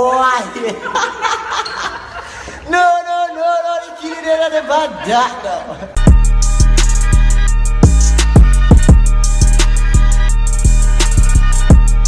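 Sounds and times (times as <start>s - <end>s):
hip-hop beat music: 6.0s - 12.0s.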